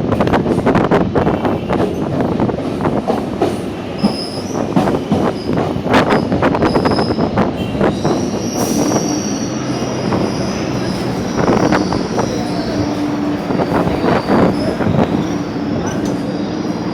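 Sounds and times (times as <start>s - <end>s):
train wheels rumbling: 0.0s - 16.9s.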